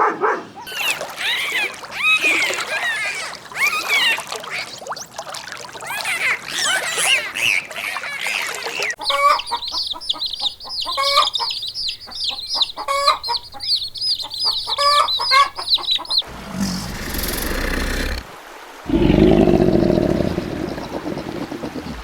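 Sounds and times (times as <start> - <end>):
chickens peeping: 8.4 - 16.6
chickens clucking: 8.8 - 18.3.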